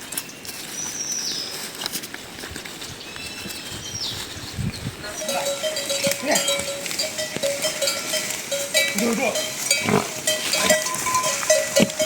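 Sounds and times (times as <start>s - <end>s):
livestock bells clanking: 5.0s - 12.0s.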